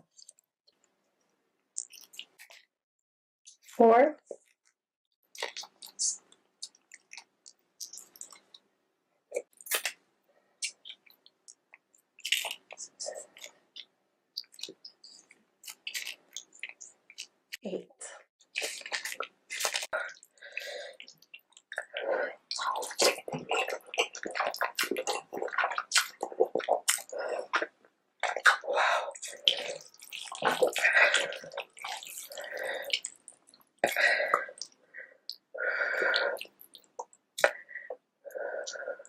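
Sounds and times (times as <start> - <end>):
wet eating and slurping: 18.4 - 37.6.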